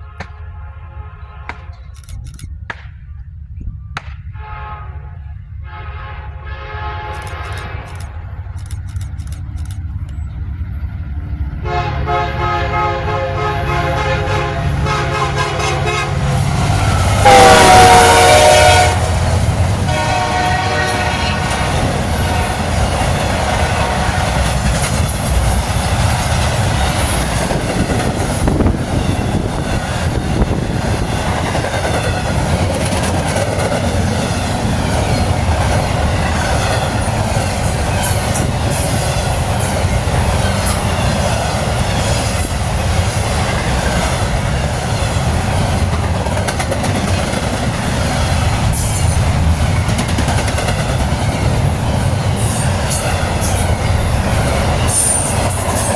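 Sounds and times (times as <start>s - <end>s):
freight train rumbling on rails: 0.0s - 55.9s
wheels clacking over rail joints: 13.6s - 55.9s.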